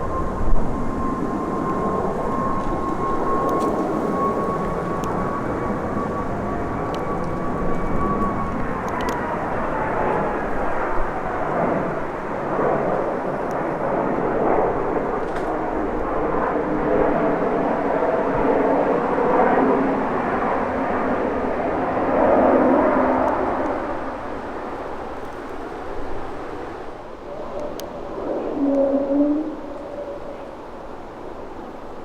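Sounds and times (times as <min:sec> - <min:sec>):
jet airliner roar overhead: 0:00.0 - 0:32.0
jet engine whine: 0:00.0 - 0:32.0.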